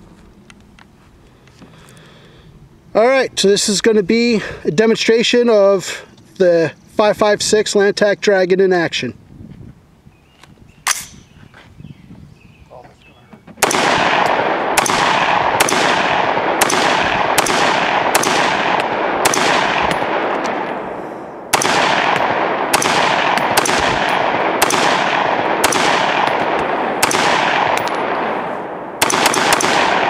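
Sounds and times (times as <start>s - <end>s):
rifle firing with echo: 13.6s - 30.0s.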